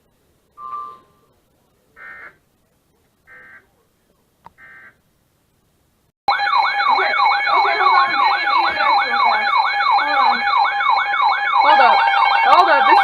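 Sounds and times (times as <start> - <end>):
electronic beep: 0.6 - 1.2
short high chirps: 0.6 - 1.3.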